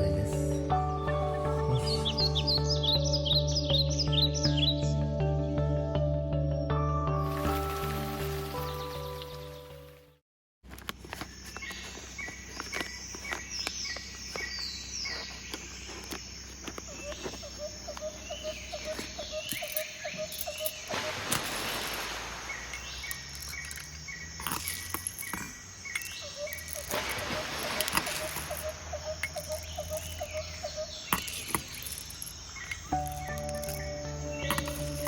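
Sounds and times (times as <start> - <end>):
bird trill: 0.0 - 5.0, 16.9 - 21.3, 22.5 - 35.0
birds chirping and calling: 0.0 - 5.0, 11.3 - 21.8, 22.5 - 35.0
outdoor background noise: 10.6 - 35.0.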